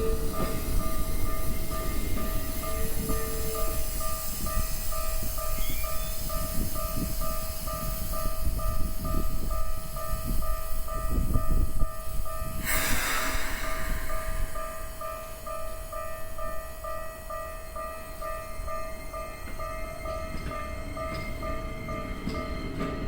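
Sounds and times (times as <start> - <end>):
electric train rumbling: 0.0 - 23.0
burst of hiss: 12.5 - 15.8.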